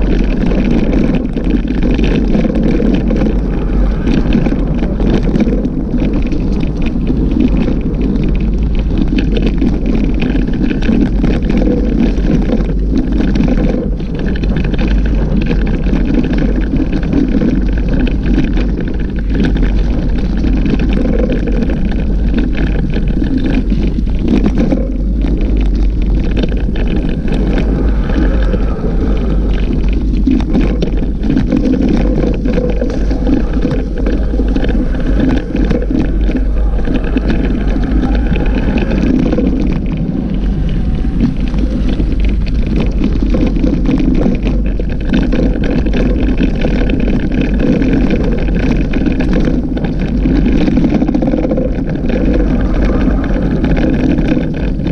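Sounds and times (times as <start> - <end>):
bike rolling and rattling on dirt: 0.0 - 54.9
wind buffeting microphone: 0.0 - 54.9.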